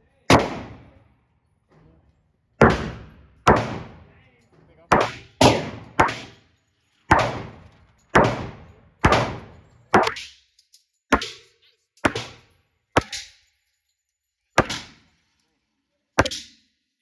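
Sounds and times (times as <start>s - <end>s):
pistol shots echoing: 0.3s - 1.0s, 2.6s - 4.1s, 4.9s - 6.4s, 7.1s - 10.3s, 14.6s - 15.0s.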